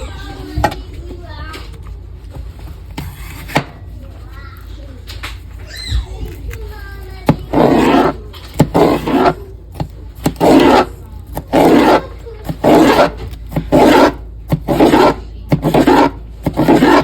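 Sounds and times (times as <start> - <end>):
rasping scraping strokes: 7.3 - 9.5, 10.2 - 17.0.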